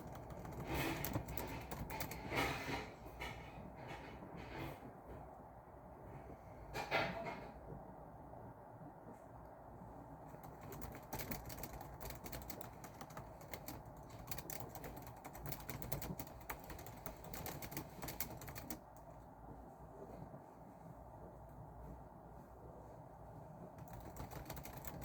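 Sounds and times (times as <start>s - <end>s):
fast typing on keyboard: 0.0s - 2.6s, 10.3s - 19.1s, 23.8s - 25.0s.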